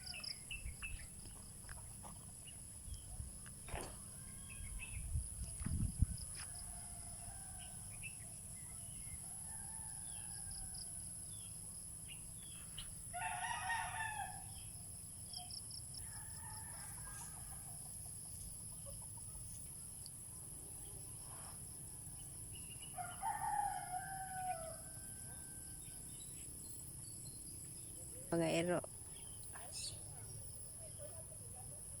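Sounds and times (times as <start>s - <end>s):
rooster crowing: 13.1s - 14.6s, 23.0s - 25.8s.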